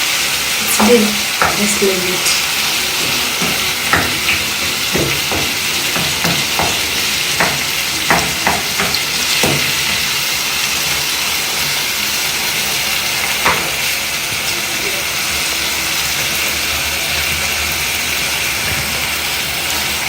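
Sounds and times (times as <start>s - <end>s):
food sizzling in a pan: 0.0s - 20.0s
spoon scraping and knocking pan: 0.8s - 11.0s, 13.2s - 14.0s.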